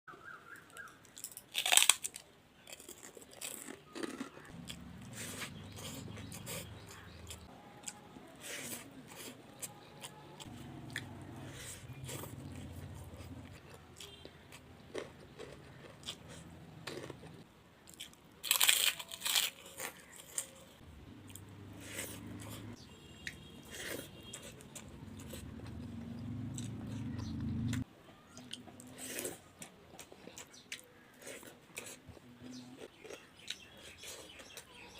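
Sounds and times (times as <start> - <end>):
crunchy food being chewed: 0.6 - 34.9
low hum: 25.4 - 27.8.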